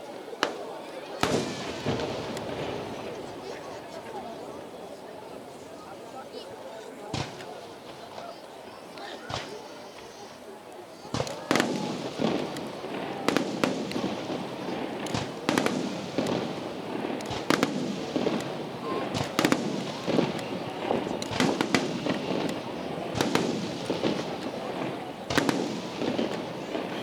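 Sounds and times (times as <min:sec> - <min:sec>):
crowd chatter: 0:00.0 - 0:27.0
fireworks shells bursting: 0:00.4 - 0:04.2, 0:11.0 - 0:27.0.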